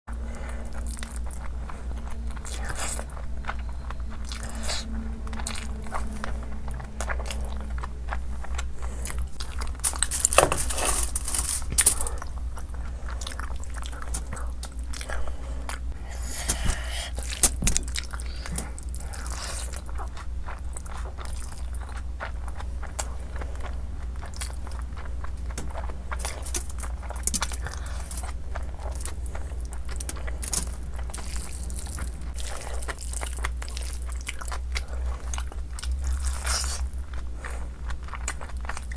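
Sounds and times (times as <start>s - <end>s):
noodles chewing and smacking: 0.1s - 38.9s
steady low hum: 0.1s - 38.9s.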